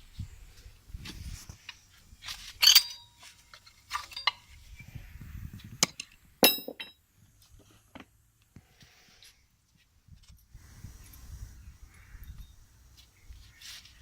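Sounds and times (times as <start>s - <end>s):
metal tools clinking: 2.3s - 4.6s, 5.9s - 7.0s.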